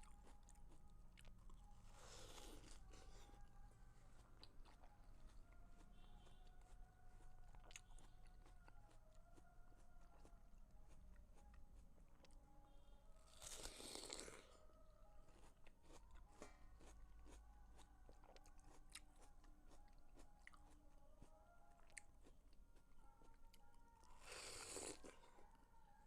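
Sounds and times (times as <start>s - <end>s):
chewing with small clicks: 0.0s - 14.6s, 15.2s - 26.0s
crunch of biting watermelon: 2.0s - 3.1s, 13.3s - 14.6s, 24.2s - 25.2s.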